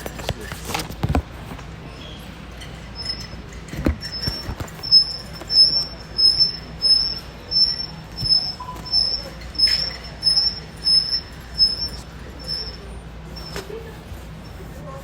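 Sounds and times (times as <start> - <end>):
short high-pitched squeak: 3.0 - 13.8.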